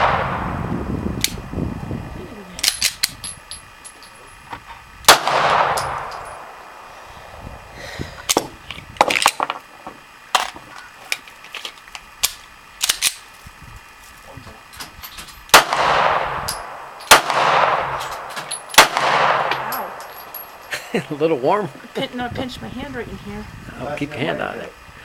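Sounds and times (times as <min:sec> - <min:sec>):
pistol shots with echo: 0:00.0 - 0:00.6, 0:05.1 - 0:06.8, 0:15.5 - 0:20.2.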